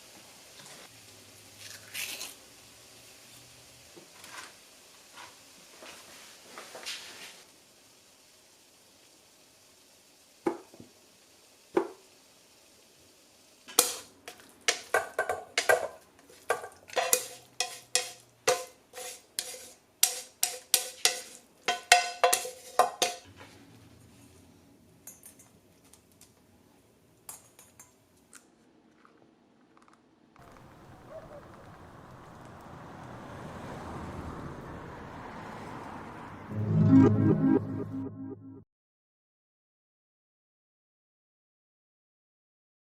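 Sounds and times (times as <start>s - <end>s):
metal utensil clinking ceramic dish: 13.8s - 23.3s.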